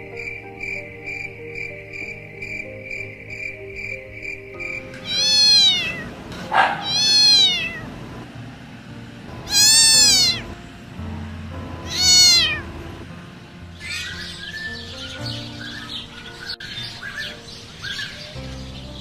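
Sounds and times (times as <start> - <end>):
animal meow-like cry: 5.0 - 7.9, 9.5 - 10.5, 11.9 - 12.7.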